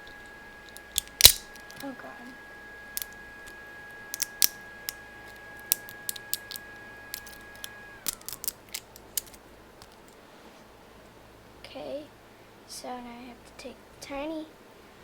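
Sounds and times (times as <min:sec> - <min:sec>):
steady high whine: 0:00.0 - 0:15.0
plastic supports snapping off: 0:00.7 - 0:01.9.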